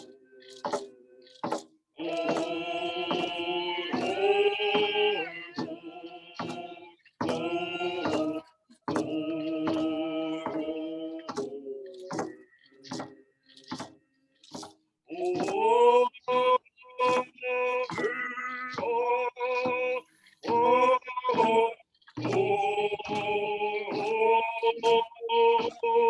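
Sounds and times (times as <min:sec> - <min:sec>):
person singing prayer song: 0:00.0 - 0:13.9, 0:14.5 - 0:26.0
steady drum beat: 0:02.0 - 0:05.0.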